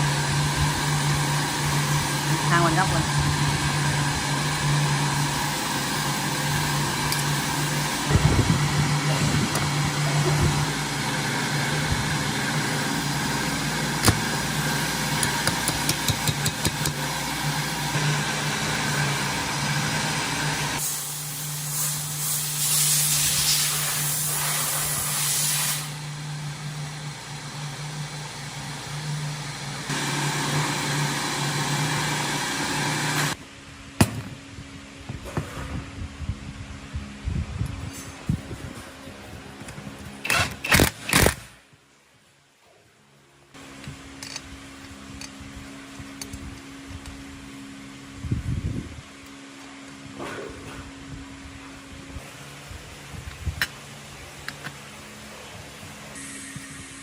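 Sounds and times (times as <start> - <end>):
lawn mower engine running: 0.0 - 21.3, 26.0 - 34.1
loud hiss: 20.8 - 26.1.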